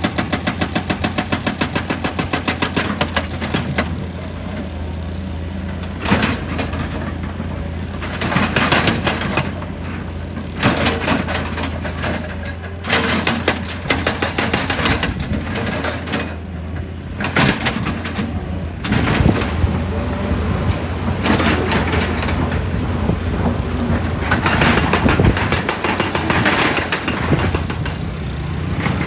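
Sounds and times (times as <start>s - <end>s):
excavator diesel engine running: 0.0s - 29.0s
rock crunching and scraping on steel: 17.2s - 29.0s.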